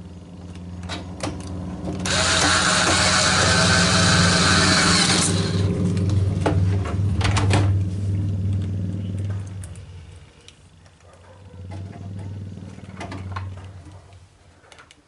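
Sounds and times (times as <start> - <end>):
low hum: 0.0 - 10.8
electric screwdriver whirring: 2.0 - 5.7
sharp clicks and knocks: 5.0 - 7.9.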